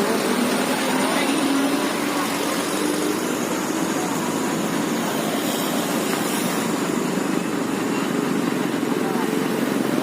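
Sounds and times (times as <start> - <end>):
vehicle engines running: 0.0 - 10.0.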